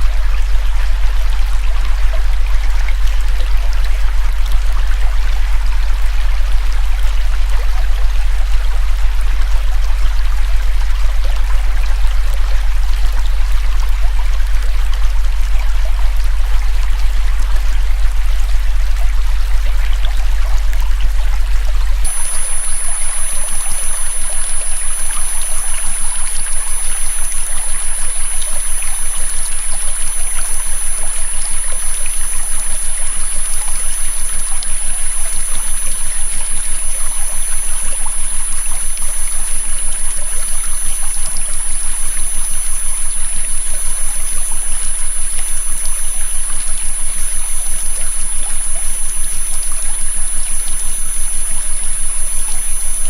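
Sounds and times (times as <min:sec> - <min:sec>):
river water running: 0:00.0 - 0:53.0
high-pitched synthesized tone: 0:22.0 - 0:53.0.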